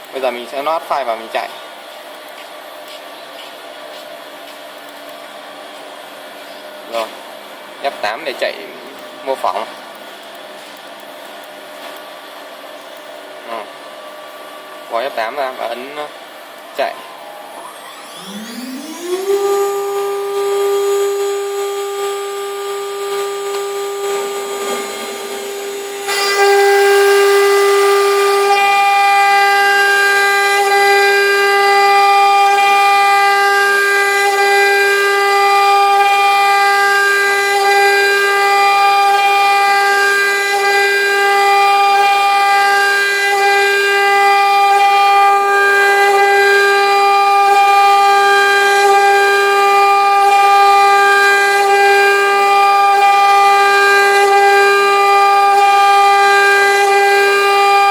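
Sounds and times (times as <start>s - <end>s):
engraving machine spindle whine: 14.9s - 57.9s.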